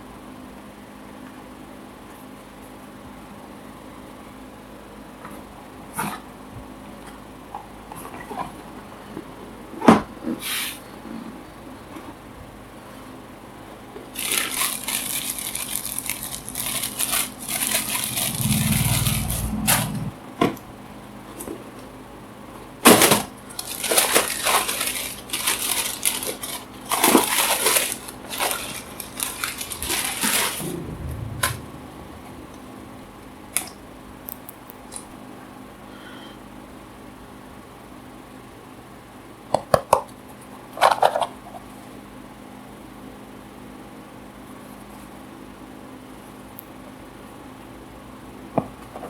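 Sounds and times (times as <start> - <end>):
packaging crinkling: 14.2 - 18.3, 23.0 - 30.6.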